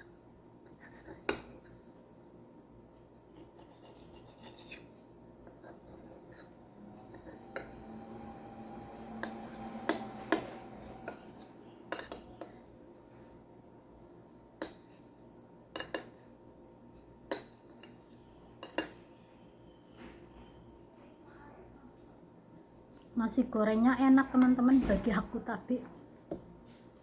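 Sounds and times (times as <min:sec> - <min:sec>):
spoon clinking against a plate: 0:18.6 - 0:19.1.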